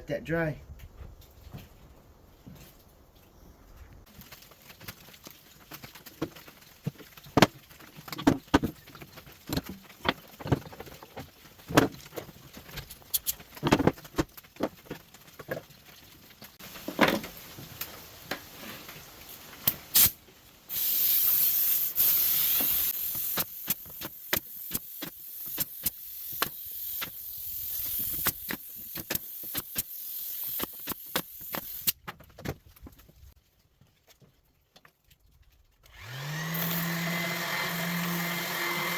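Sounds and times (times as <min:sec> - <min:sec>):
loud hiss of rushing air: 0:19.9 - 0:23.4.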